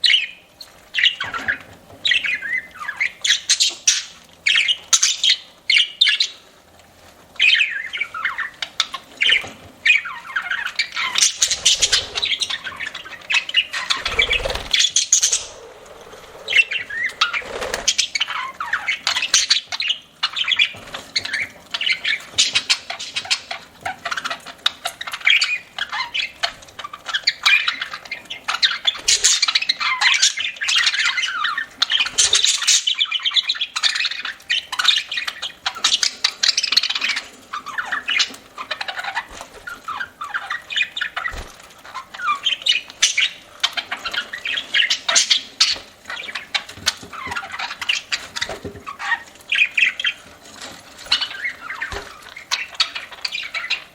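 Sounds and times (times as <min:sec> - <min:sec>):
budgerigars chattering and squawking: 0:00.0 - 0:06.4, 0:07.4 - 0:50.4, 0:51.0 - 0:53.9.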